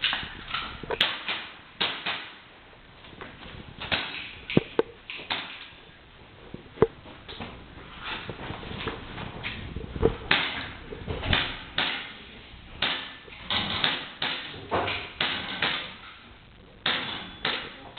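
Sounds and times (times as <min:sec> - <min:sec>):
airsoft pistol shots: 0:01.0 - 0:02.4, 0:16.8 - 0:17.7.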